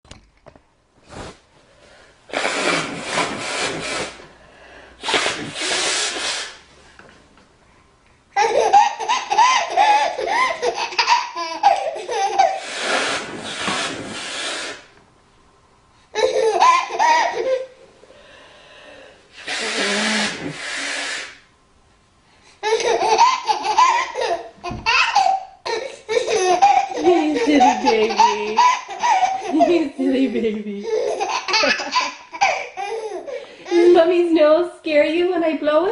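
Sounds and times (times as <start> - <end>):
woman blowing her nose: 2.3 - 4.3, 4.9 - 6.7, 12.4 - 15.0, 19.3 - 21.5, 26.6 - 30.0
baby vocal outbursts: 22.6 - 29.8.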